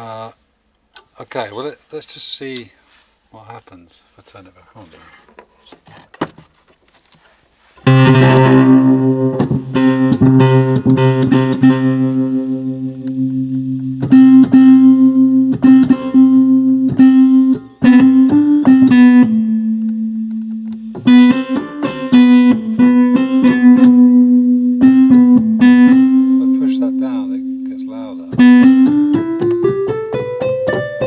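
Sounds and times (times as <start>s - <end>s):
electric keyboard notes and chords: 7.8s - 31.0s
sustained low keyboard notes: 7.8s - 31.0s.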